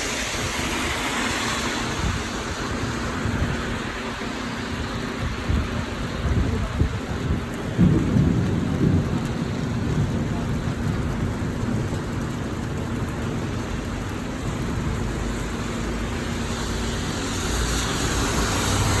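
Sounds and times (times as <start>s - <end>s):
steady rain falling: 0.0s - 19.0s
low rumble of thunder: 4.8s - 16.2s.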